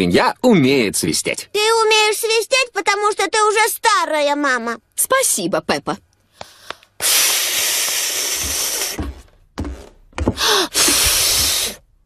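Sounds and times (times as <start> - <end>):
breathy blowing through lips: 6.5 - 9.0, 10.3 - 11.8.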